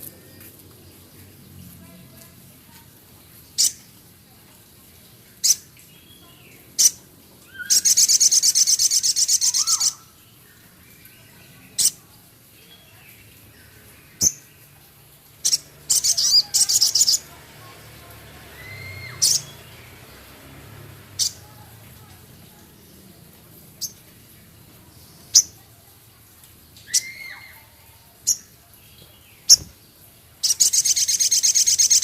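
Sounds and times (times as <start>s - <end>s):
harsh rattling bird trills: 7.6s - 10.1s, 30.4s - 32.0s.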